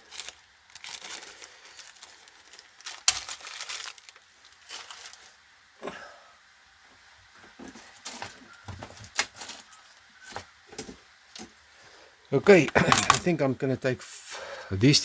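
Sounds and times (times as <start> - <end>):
rustling and crinkling handling: 0.0 - 5.5, 12.5 - 13.4.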